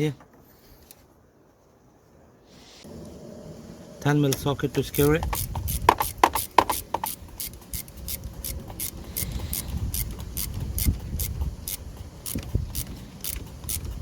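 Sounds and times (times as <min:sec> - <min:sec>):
low handling rumble: 0:02.8 - 0:06.2
socket ratchet clicking: 0:04.9 - 0:14.0.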